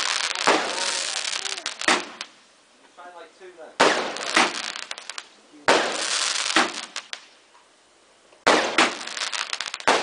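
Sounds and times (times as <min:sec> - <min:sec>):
fireworks bang and crackling: 0:00.0 - 0:02.5, 0:03.1 - 0:07.4, 0:08.4 - 0:10.0.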